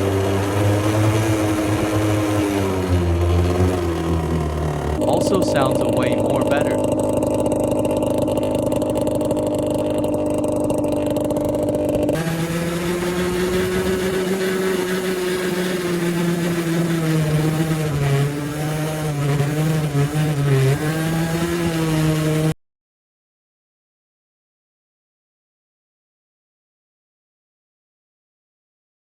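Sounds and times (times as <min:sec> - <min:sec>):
two-stroke engine revving: 0:00.0 - 0:22.6.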